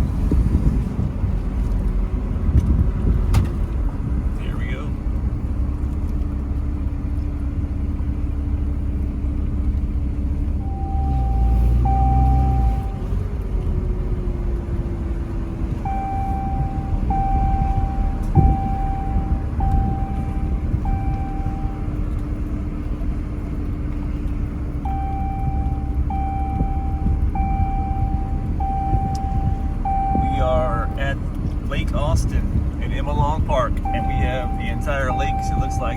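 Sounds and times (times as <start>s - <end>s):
truck engine and road rumble: 0.0s - 35.9s
vehicle warning chime beeps: 10.6s - 13.2s, 15.7s - 22.5s, 24.2s - 35.9s.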